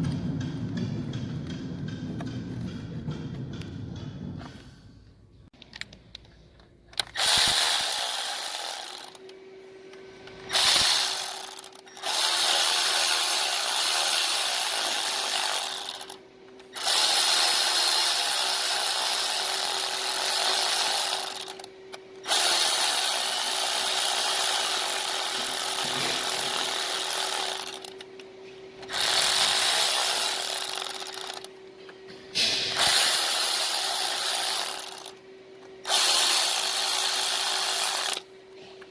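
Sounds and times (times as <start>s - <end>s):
handheld power tool running: 7.0s - 28.2s, 28.8s - 31.6s, 32.8s - 38.3s.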